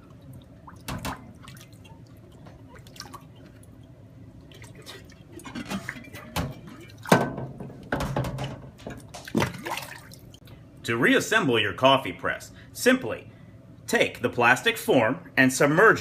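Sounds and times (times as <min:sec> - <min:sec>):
water dripping and splashing: 0:00.0 - 0:07.5, 0:08.3 - 0:10.6.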